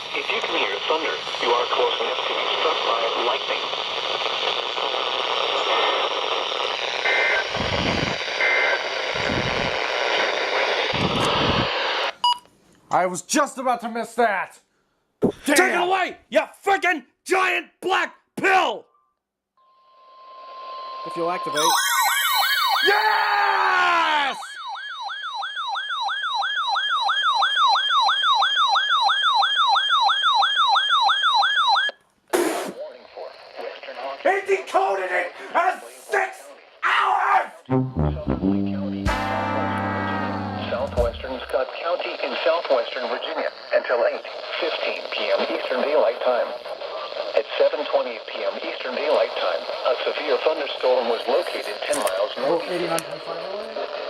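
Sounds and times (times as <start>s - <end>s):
radio static hiss: 0.0s - 12.2s, 32.3s - 36.8s, 40.5s - 54.0s
two-tone data bursts: 19.6s - 23.0s
warbling siren alarm: 19.6s - 32.0s.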